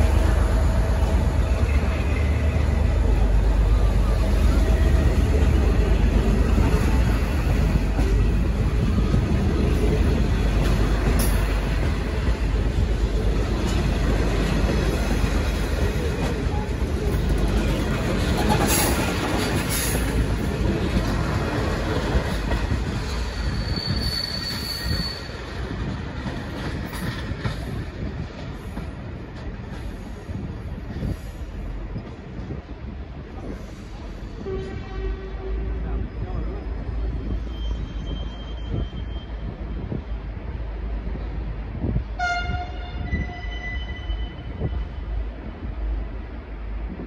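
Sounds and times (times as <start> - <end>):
train rumbling and clattering: 0.0 - 47.0
high-pitched wheel squeal: 23.3 - 25.4, 37.4 - 39.5.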